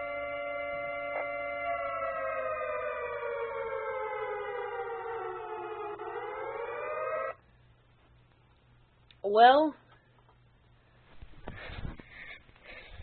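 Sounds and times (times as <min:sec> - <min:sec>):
air raid siren wailing: 0:00.0 - 0:07.4.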